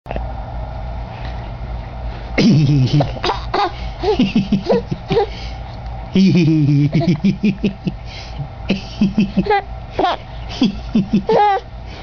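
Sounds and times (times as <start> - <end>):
low background hum: 0.1 - 12.0
people laughing: 4.1 - 5.1, 8.7 - 9.6.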